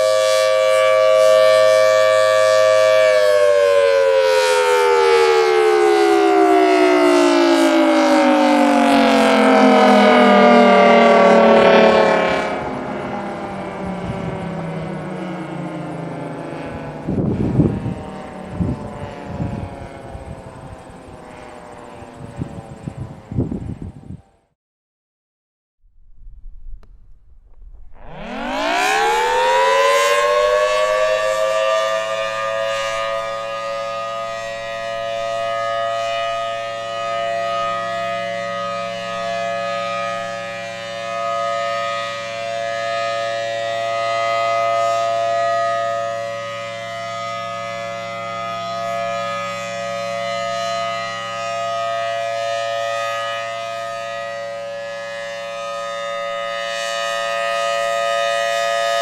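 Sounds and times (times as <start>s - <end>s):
civil defense siren winding up: 0.0s - 24.6s, 27.9s - 59.0s.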